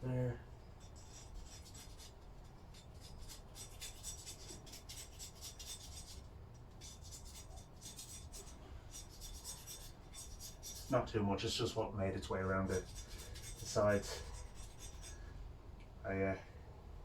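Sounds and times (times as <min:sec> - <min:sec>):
blade scraping paint off metal: 0:00.8 - 0:11.1, 0:12.6 - 0:15.2.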